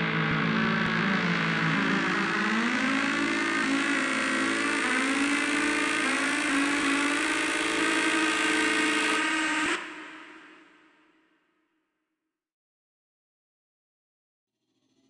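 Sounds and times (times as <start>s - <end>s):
wavering synthesized drone: 0.0s - 10.8s.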